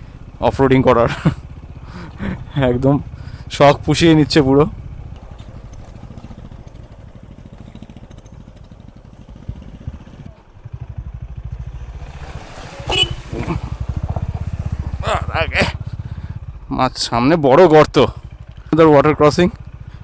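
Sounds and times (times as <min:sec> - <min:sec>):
motorcycle engine thumping: 0:01.1 - 0:16.6.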